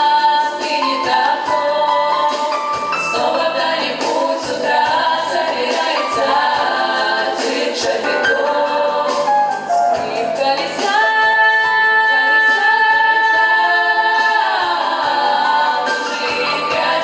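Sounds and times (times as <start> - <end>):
vocal ensemble singing in harmony: 0.0 - 17.0.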